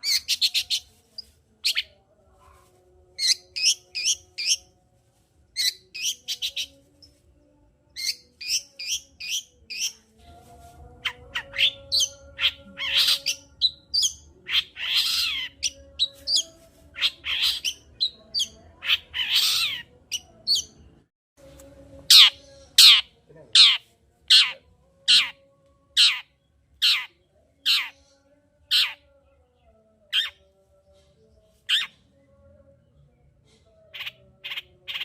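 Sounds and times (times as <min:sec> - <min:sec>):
harsh rasping bird calls: 0:11.0 - 0:19.9, 0:22.1 - 0:25.4
bird chirping: 0:11.0 - 0:20.8.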